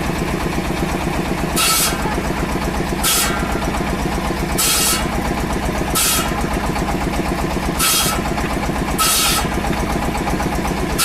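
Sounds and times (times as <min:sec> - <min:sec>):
machine engine running: 0:00.0 - 0:11.0.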